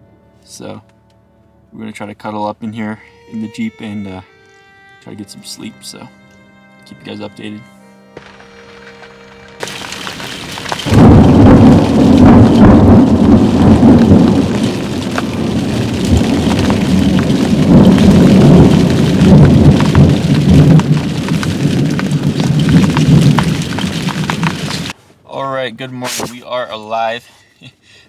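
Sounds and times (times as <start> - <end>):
heavy rain pelting down: 9.6 - 25.0
low rumble of thunder: 9.8 - 25.0.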